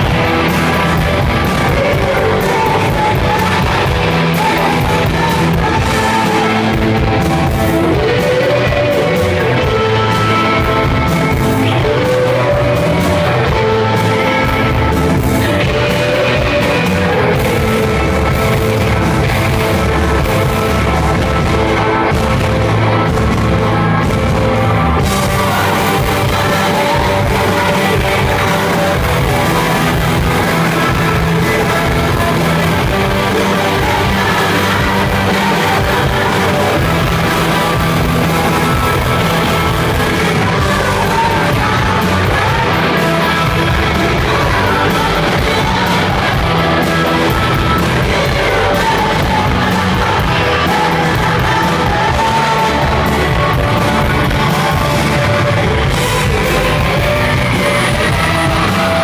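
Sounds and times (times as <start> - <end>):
person singing: 0.0 - 59.0
rock band playing live: 0.0 - 59.0
shouted vocals: 24.7 - 59.0.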